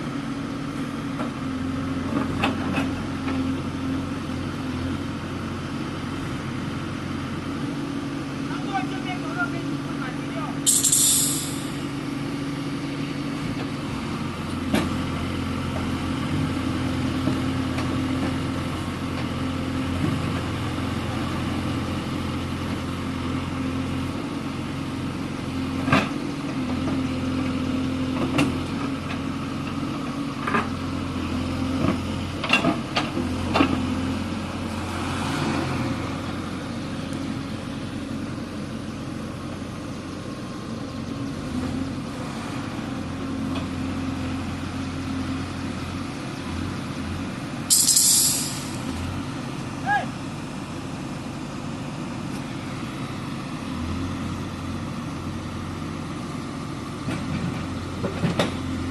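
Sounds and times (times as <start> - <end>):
diesel engine running: 0.0 - 58.9
sharp metallic knocks: 10.7 - 11.8, 47.7 - 49.0.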